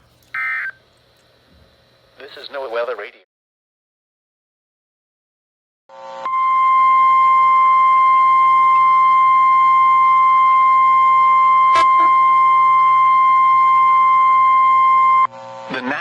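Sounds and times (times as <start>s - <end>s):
steady alarm tone: 0.4s - 0.8s, 6.3s - 15.3s.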